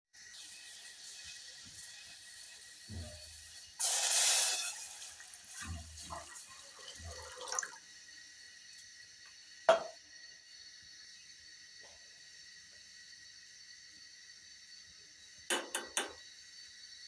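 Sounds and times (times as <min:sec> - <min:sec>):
water pouring: 0:00.2 - 0:08.0
kitchenware knocking: 0:09.7 - 0:10.0.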